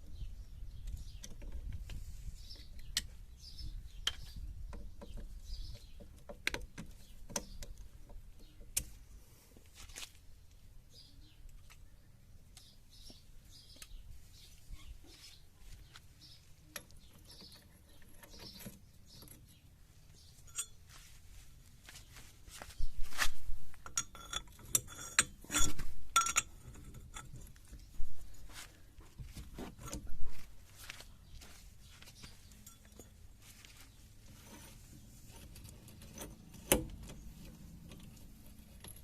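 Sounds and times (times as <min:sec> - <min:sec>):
metal tools and parts clanking: 0:20.4 - 0:20.9, 0:23.7 - 0:28.5, 0:32.5 - 0:33.4, 0:34.3 - 0:39.0.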